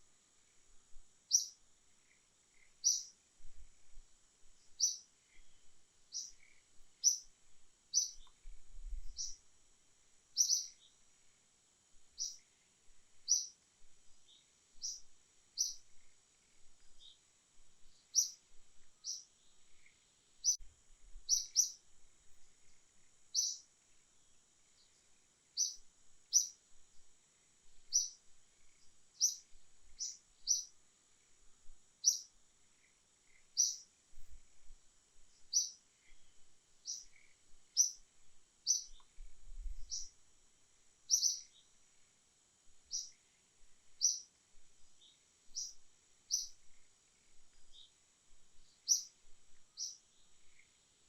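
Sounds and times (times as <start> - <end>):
faint high-pitched hum: 0.0 - 51.0
bird chirping: 1.3 - 3.2, 4.6 - 9.4, 10.3 - 11.0, 12.1 - 12.6, 13.2 - 13.6, 14.2 - 17.2, 17.8 - 20.6, 21.3 - 21.8, 22.6 - 23.7, 24.3 - 26.6, 27.8 - 30.8, 32.0 - 33.9, 35.3 - 40.2, 41.1 - 41.8, 42.9 - 43.3, 43.9 - 44.3, 45.0 - 48.0, 48.6 - 50.8.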